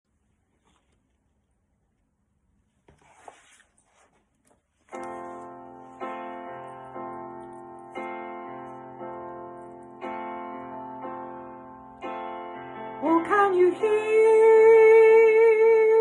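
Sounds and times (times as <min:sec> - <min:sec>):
piano chords: 0:04.9 - 0:16.0.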